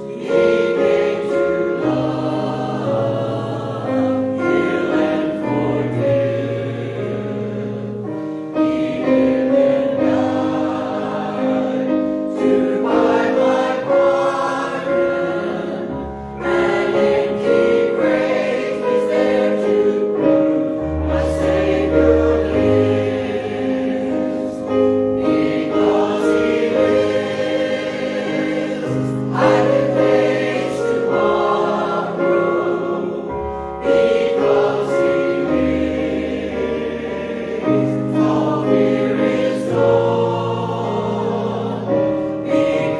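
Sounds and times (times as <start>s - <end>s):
congregation singing a hymn: 0.0s - 42.9s.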